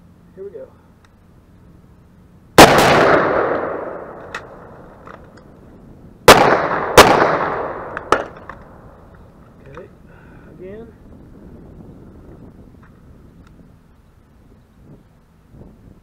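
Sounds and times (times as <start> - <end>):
rifle shots with echo: 2.6 - 5.0, 6.2 - 8.8.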